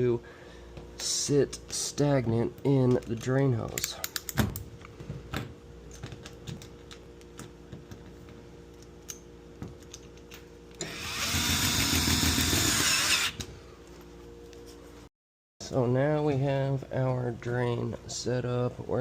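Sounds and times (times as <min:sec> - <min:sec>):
power drill running: 0:10.8 - 0:13.4.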